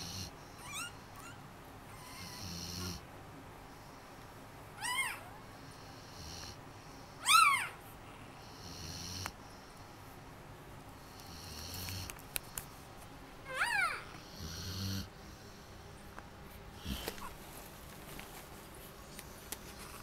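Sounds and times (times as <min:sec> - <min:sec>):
puppy high squeals: 0:00.6 - 0:02.4, 0:04.8 - 0:05.4, 0:07.2 - 0:07.8, 0:13.5 - 0:14.1
puppies snuffly breathing: 0:15.0 - 0:20.0.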